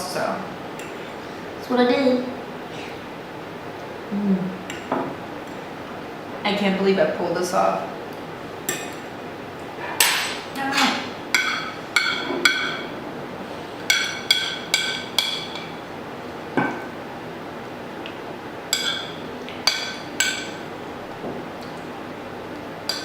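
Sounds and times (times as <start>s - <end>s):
cutlery clinking against a dish: 10.0s - 12.9s, 13.8s - 15.8s, 18.7s - 20.6s.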